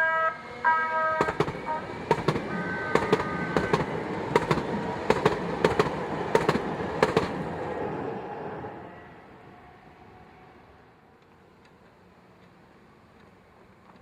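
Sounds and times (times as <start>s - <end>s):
light-rail train passing: 0.0s - 14.0s
train wheels clacking over rail joints: 1.2s - 7.7s.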